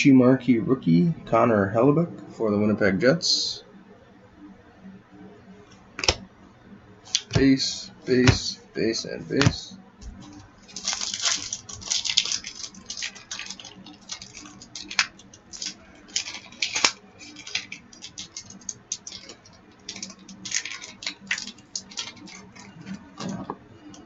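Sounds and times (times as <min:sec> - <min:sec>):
cards being handled: 0:07.1 - 0:08.6, 0:09.4 - 0:24.0
foil wrapper crinkling and tearing: 0:10.2 - 0:23.3.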